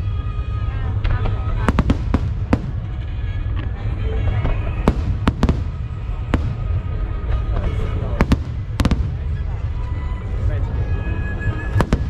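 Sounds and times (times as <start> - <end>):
background music: 0.0 - 12.0
low rumble: 0.0 - 12.0
fireworks bangs: 1.0 - 10.1, 11.6 - 12.0.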